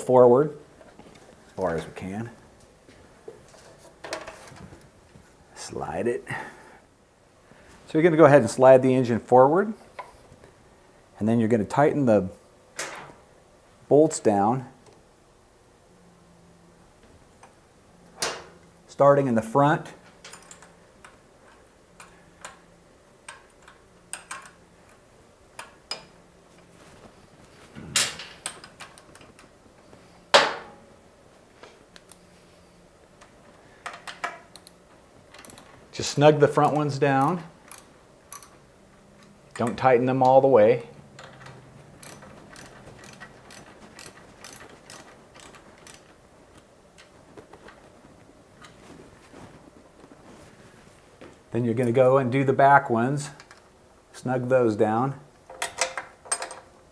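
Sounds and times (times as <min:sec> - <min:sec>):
socket ratchet clicking: 0:36.6 - 0:38.5, 0:41.2 - 0:46.1.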